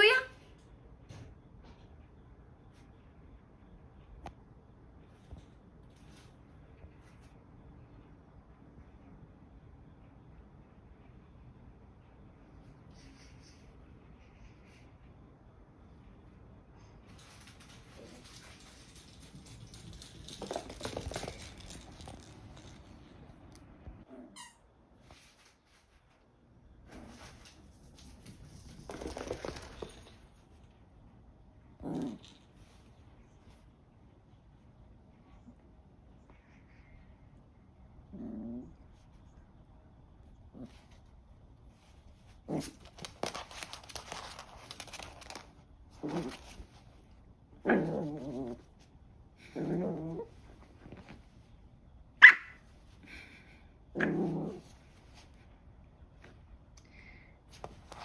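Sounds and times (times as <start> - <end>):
puppy rustling and pattering: 5.0 - 7.6, 16.9 - 23.9, 25.0 - 30.7, 40.5 - 51.8, 54.5 - 56.6, 57.5 - 58.0
rustling and scuffling: 25.0 - 30.6, 40.6 - 47.3, 57.5 - 58.0
puppy growling: 31.8 - 32.5, 38.0 - 39.0, 45.9 - 46.9, 47.6 - 48.8, 49.4 - 51.2, 53.9 - 55.0
puppy yip: 52.2 - 52.6.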